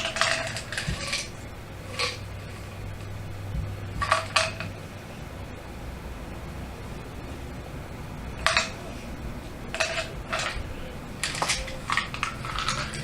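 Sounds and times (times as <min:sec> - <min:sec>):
kitchenware clattering: 0:00.0 - 0:04.8, 0:08.4 - 0:13.0
steady low hum: 0:00.0 - 0:13.0.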